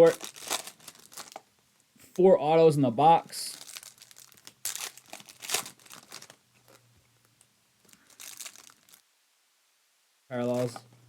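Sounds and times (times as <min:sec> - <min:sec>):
foil wrappers tearing and crinkling: 0:00.0 - 0:01.4, 0:03.5 - 0:06.8, 0:07.8 - 0:09.0.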